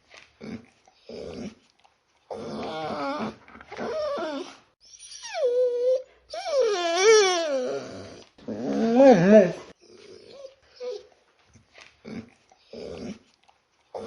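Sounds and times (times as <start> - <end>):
dog whining: 2.3 - 11.2.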